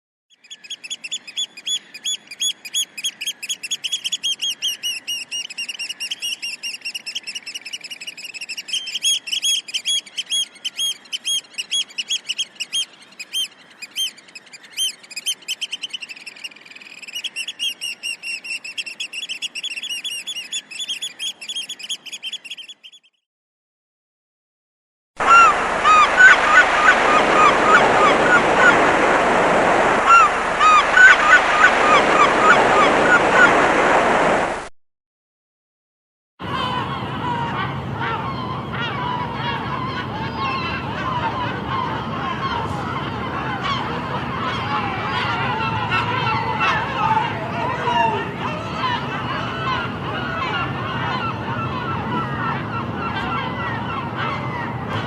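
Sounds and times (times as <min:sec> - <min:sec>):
high rapid gull calls: 0:00.4 - 0:23.0, 0:25.2 - 0:34.7, 0:36.4 - 0:55.0
lower gull calls: 0:25.2 - 0:33.8, 0:36.4 - 0:55.0
surf washing: 0:25.2 - 0:34.7, 0:39.0 - 0:55.0.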